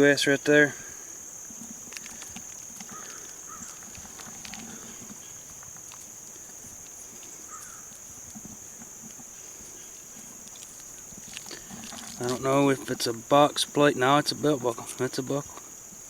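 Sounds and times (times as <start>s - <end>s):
insects droning: 0.0s - 16.0s
clicks and rustles of handling: 1.5s - 13.0s.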